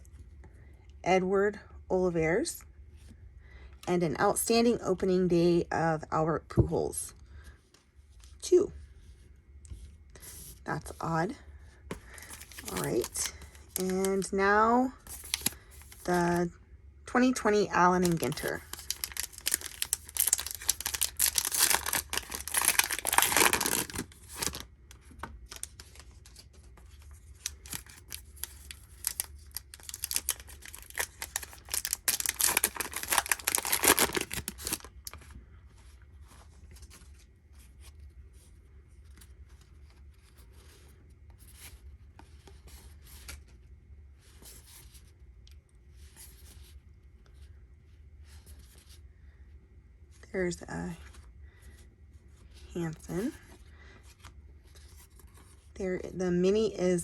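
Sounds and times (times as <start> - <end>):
cards rustling: 11.9 - 16.4, 17.8 - 38.1
wrapper tearing: 15.1 - 16.1, 18.0 - 24.7, 27.4 - 35.2.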